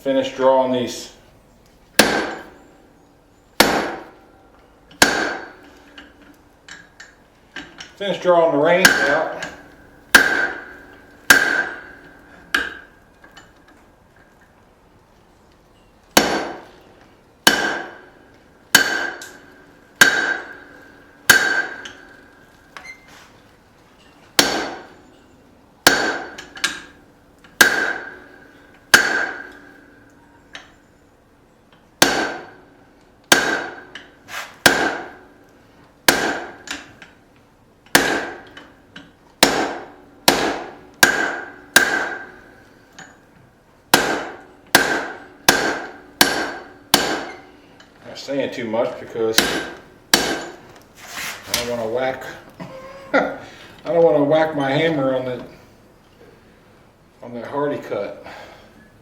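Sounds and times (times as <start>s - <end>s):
hammer blows on an anvil: 8.7s - 12.9s, 18.8s - 22.2s, 49.3s - 50.6s.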